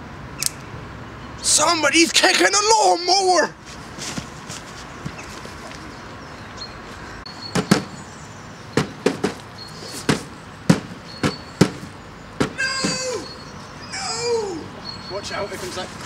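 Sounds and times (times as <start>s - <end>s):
kicks knocking on lawnmower: 7.5s - 8.0s, 8.8s - 9.4s, 10.1s - 13.1s.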